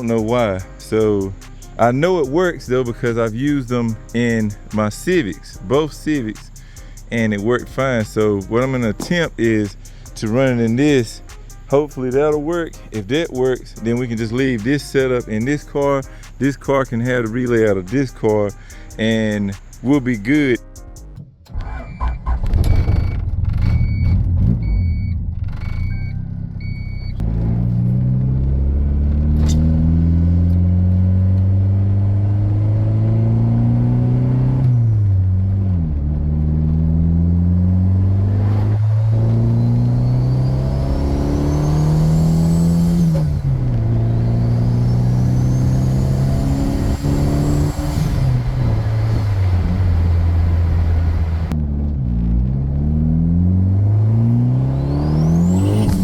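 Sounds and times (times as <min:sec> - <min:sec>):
car engine accelerating: 0:00.0 - 0:20.4, 0:21.0 - 0:56.0
turbo whistle: 0:21.6 - 0:27.2, 0:54.8 - 0:56.0
electronic chime beeping: 0:25.8 - 0:27.2.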